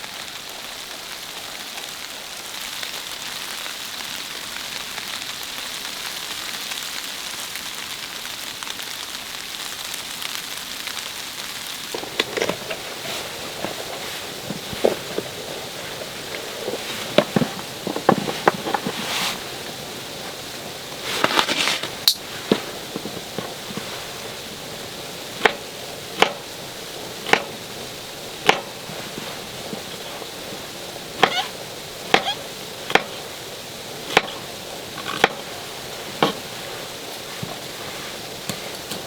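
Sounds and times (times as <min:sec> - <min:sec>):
steady hiss: 0:00.0 - 0:39.0
short rustle: 0:11.8 - 0:39.0
sharp knocks: 0:26.2 - 0:26.4, 0:32.1 - 0:33.2, 0:34.1 - 0:35.4.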